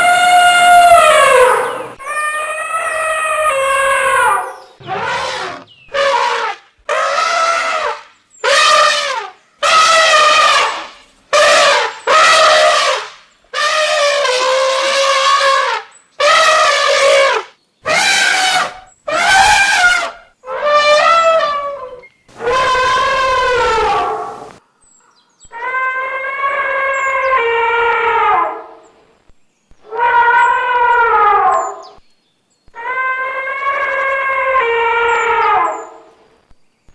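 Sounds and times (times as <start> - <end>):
elephants trumpeting: 0.0 - 24.6.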